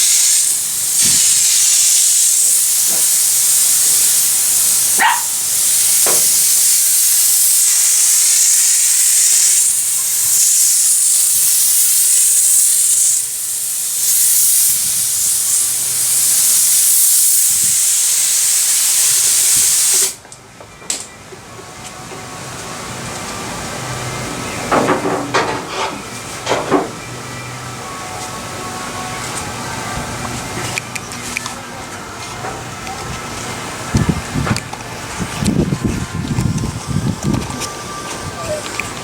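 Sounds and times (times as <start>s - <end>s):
spray gun hissing: 0.0s - 20.2s.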